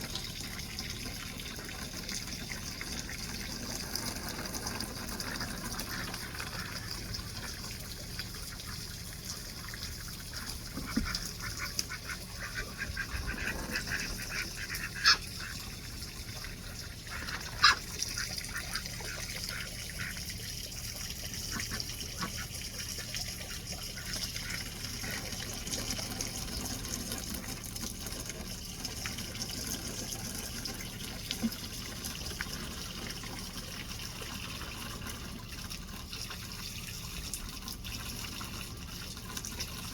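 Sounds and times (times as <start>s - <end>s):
running water: 0.0s - 39.9s
ducks calling: 10.3s - 15.7s, 17.0s - 20.2s.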